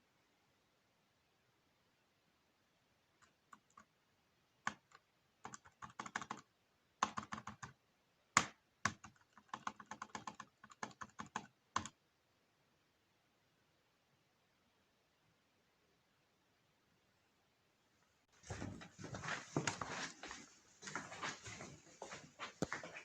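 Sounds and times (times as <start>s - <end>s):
laptop keyboard typing: 3.2s - 4.0s, 4.6s - 7.8s, 8.4s - 12.0s.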